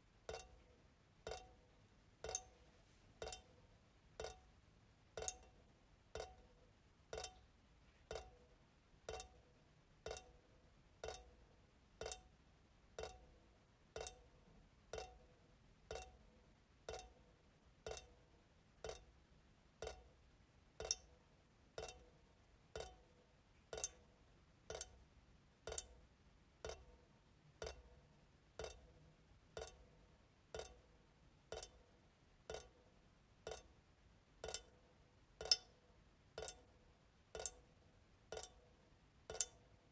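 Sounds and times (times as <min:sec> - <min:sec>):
faucet dripping into sink: 0:00.2 - 0:01.6, 0:02.2 - 0:02.6, 0:03.2 - 0:03.5, 0:04.2 - 0:04.5, 0:05.2 - 0:06.5, 0:07.1 - 0:07.5, 0:08.1 - 0:08.4, 0:09.0 - 0:09.4, 0:10.0 - 0:10.4, 0:11.0 - 0:11.3, 0:12.0 - 0:12.3, 0:13.0 - 0:13.3, 0:14.0 - 0:14.3, 0:14.9 - 0:15.2, 0:15.9 - 0:16.2, 0:16.9 - 0:17.2, 0:17.8 - 0:18.1, 0:18.8 - 0:19.1, 0:19.8 - 0:20.1, 0:20.8 - 0:21.1, 0:21.8 - 0:22.1, 0:22.8 - 0:23.0, 0:23.7 - 0:24.0, 0:24.7 - 0:25.0, 0:25.7 - 0:26.0, 0:26.6 - 0:26.9, 0:27.6 - 0:27.8, 0:28.6 - 0:28.9, 0:29.5 - 0:29.8, 0:30.5 - 0:30.8, 0:31.5 - 0:31.8, 0:32.5 - 0:32.8, 0:33.4 - 0:33.7, 0:34.4 - 0:34.8, 0:35.4 - 0:35.8, 0:36.4 - 0:36.7, 0:37.3 - 0:37.7, 0:38.3 - 0:38.7, 0:39.3 - 0:39.6.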